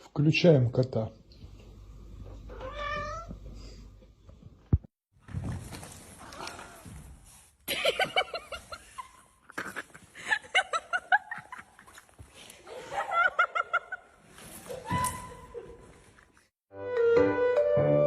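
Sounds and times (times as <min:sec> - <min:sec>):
people laughing: 0:07.7 - 0:14.2.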